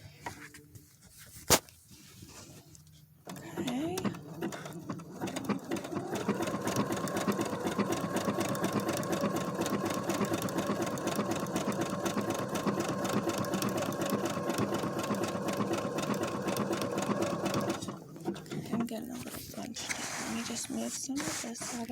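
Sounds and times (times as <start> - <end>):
sewing machine motor whine: 3.3 - 18.8
sewing machine needle chatter: 3.3 - 18.8.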